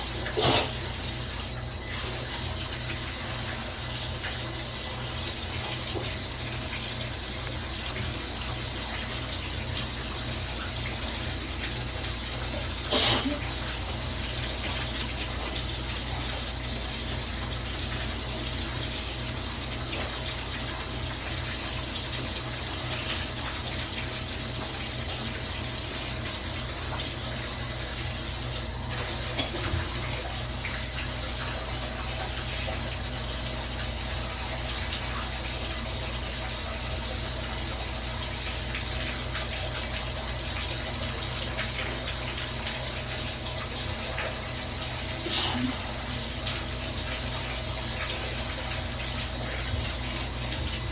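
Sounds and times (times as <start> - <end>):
tap running into bathtub: 0.0 - 50.9
loud sneezes: 0.4 - 0.8, 12.9 - 13.5, 45.2 - 45.9.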